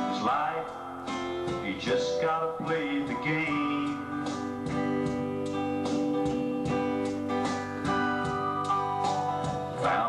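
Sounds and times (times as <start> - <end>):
person singing: 0.0 - 4.8, 9.4 - 10.0
guitar chords strummed: 0.0 - 10.0.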